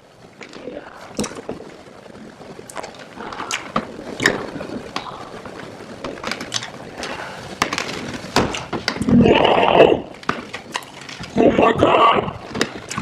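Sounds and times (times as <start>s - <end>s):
wrapper clicks and rustling: 0.4s - 9.2s, 10.0s - 11.4s.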